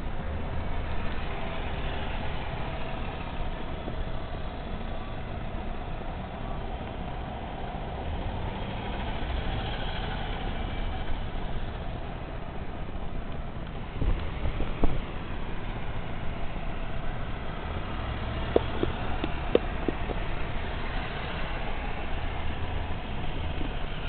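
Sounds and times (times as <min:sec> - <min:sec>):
road rumble: 0:00.0 - 0:24.0
car engine running: 0:10.2 - 0:24.0.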